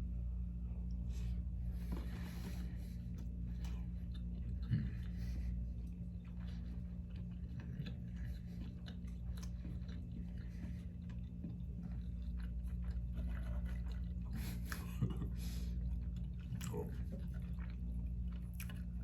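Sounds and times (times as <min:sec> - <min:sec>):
steady low hum: 0:00.0 - 0:19.0
close-up chewing with crunches: 0:01.2 - 0:19.0.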